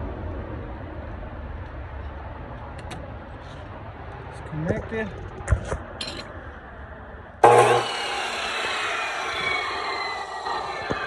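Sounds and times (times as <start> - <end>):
chop saw motor whirring: 7.4 - 11.0.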